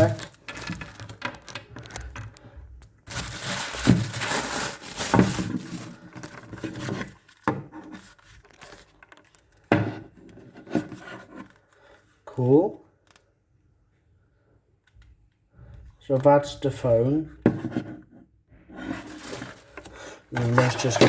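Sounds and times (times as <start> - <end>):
plastic crinkling: 0.0 - 9.7, 19.0 - 21.0
cardboard rubbing: 3.1 - 9.0, 18.7 - 21.0.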